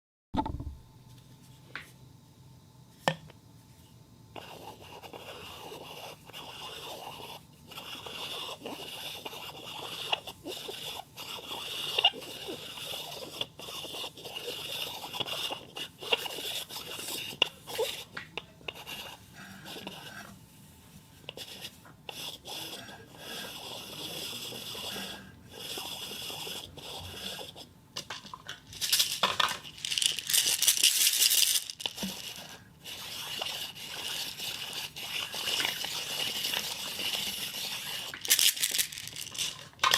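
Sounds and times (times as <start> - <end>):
ball rolling rattle in cup: 28.0 - 39.9.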